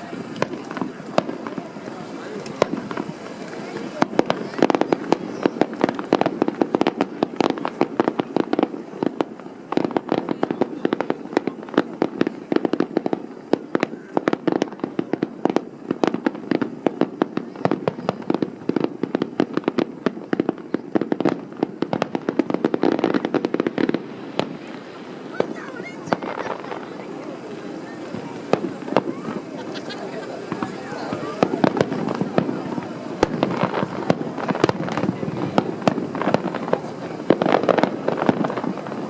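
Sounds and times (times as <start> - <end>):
fireworks bangs and crackles: 0.0 - 39.0.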